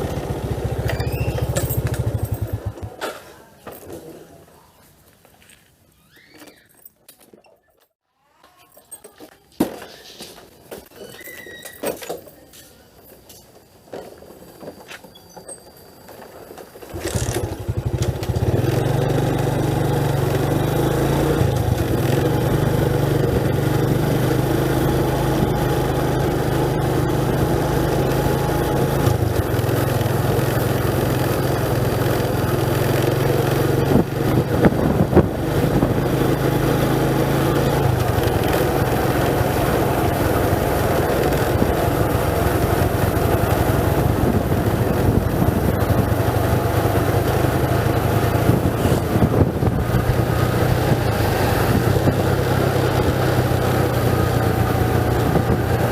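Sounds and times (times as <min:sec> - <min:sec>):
vehicle engine starting and running: 0:00.0 - 0:03.0, 0:16.8 - 0:55.9.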